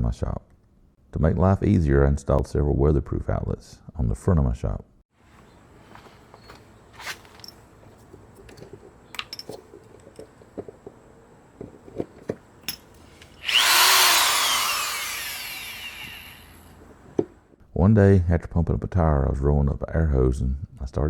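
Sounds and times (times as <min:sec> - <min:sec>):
handling clicks and knocks: 0:06.0 - 0:13.3
power tool whine winding down: 0:13.3 - 0:16.8.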